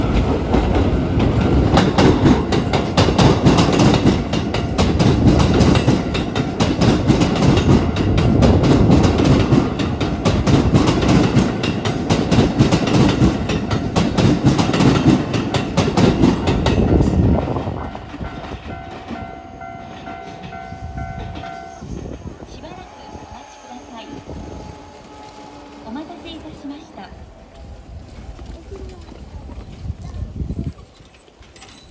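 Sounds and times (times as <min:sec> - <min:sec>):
train wheels clicking over rails: 0:00.0 - 0:30.5
level crossing bell ringing: 0:17.9 - 0:27.1.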